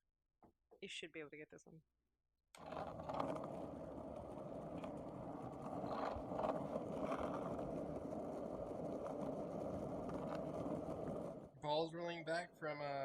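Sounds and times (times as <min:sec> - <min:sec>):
skateboard clacks: 0:02.6 - 0:11.5
skateboard wheels rumbling: 0:02.6 - 0:11.6.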